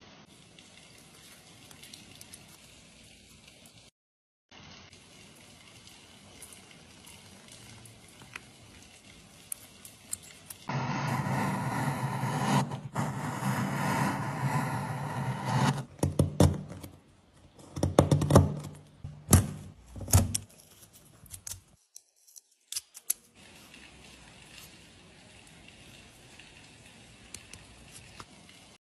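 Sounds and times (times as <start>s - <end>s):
power tool humming: 10.7s - 13.2s.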